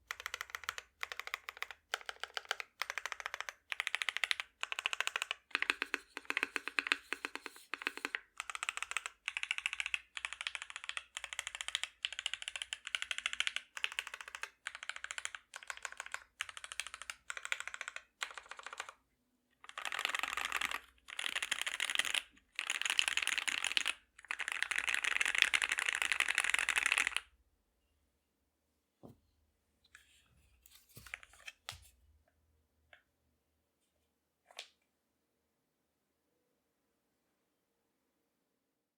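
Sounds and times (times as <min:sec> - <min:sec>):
mechanical keyboard typing: 0:00.0 - 0:19.0, 0:19.6 - 0:27.2.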